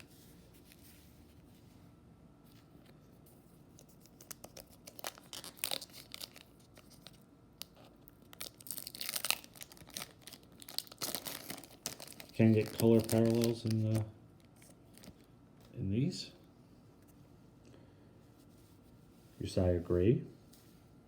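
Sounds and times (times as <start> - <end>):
foil wrapper tearing and crinkling: 3.8 - 15.2.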